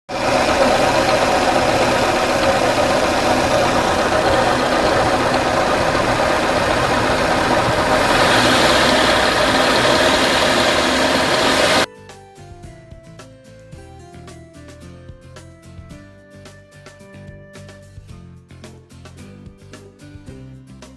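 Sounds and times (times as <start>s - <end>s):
car engine running: 0.1s - 11.9s
failing compressor noise: 0.1s - 11.9s
music: 11.9s - 20.9s.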